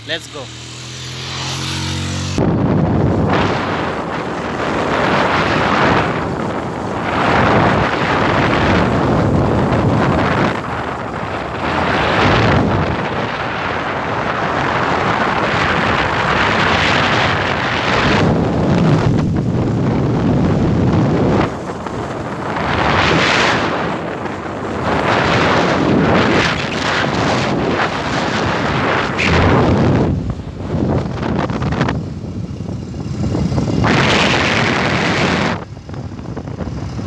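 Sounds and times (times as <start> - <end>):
wind buffeting microphone: 0.6 - 37.0.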